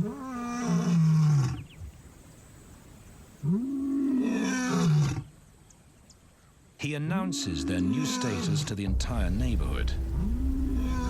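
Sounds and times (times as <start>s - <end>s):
lion roaring: 9.6s - 11.0s.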